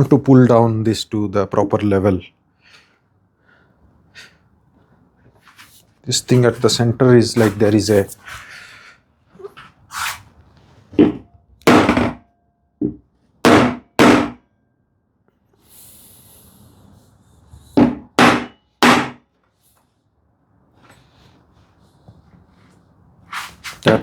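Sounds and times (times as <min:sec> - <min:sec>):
hammer striking wood panel: 0:11.0 - 0:12.2, 0:13.4 - 0:14.4, 0:17.8 - 0:19.2.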